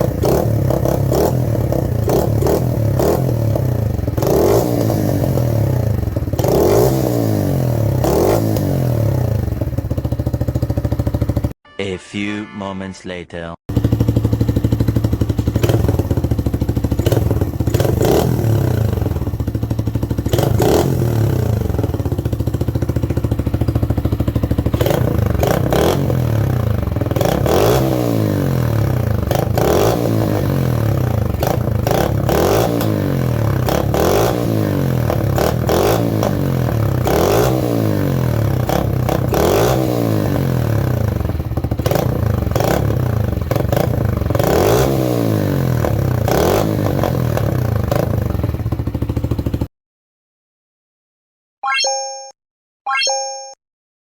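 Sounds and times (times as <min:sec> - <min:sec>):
motorcycle engine revving: 0:00.0 - 0:11.6, 0:13.7 - 0:49.7.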